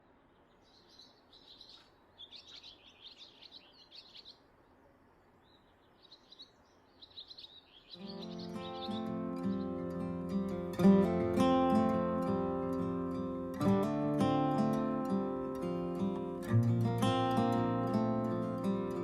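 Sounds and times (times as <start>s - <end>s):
songbirds chirping: 0.0s - 19.0s
music: 8.0s - 19.0s.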